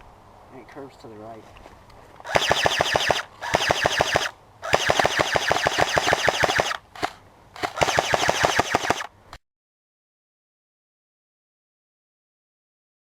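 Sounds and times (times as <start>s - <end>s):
airsoft gun full-auto bursts: 2.3s - 9.2s.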